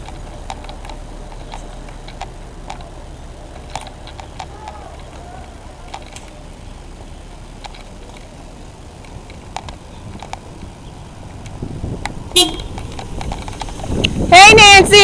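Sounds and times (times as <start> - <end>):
sharp clicks and knocks: 0.0 - 5.2, 9.0 - 14.2
outdoor background noise: 0.0 - 15.0.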